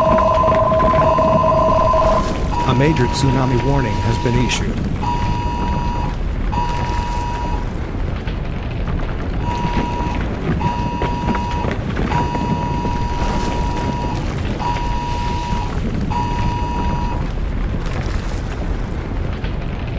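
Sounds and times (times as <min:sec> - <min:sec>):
phone emergency alert beeps: 0:00.0 - 0:07.6, 0:09.4 - 0:17.2
deep earthquake rumble: 0:00.0 - 0:19.9.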